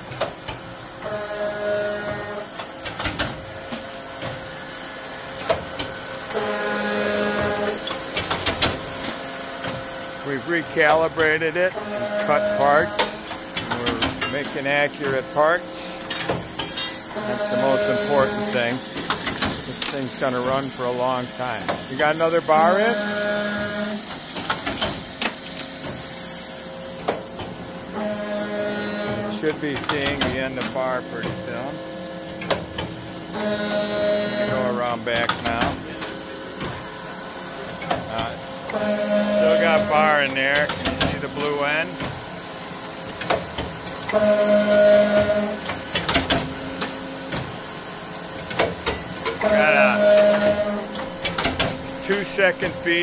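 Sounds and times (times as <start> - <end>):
machine clacks and knocks: 2.1 - 4.5, 5.3 - 6.0, 7.3 - 9.9, 12.8 - 22.2, 24.1 - 26.1, 29.1 - 31.7, 32.3 - 33.0, 34.5 - 36.9, 37.6 - 38.4, 39.4 - 42.4, 43.0 - 44.3, 45.1 - 47.6, 48.4 - 53.0
steady hiss: 6.8 - 27.6, 49.2 - 53.0
sharp machine clacks: 7.4 - 9.8, 12.9 - 22.8, 39.4 - 42.2, 51.0 - 53.0
cut-off saw whine: 10.2 - 24.0, 33.3 - 36.3, 38.1 - 41.9, 49.4 - 51.0.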